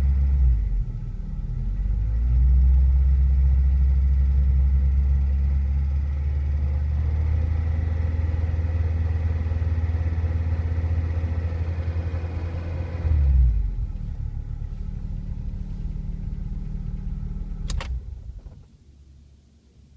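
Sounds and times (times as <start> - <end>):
car engine running: 2.4 - 18.7
sharp click: 17.6 - 18.0.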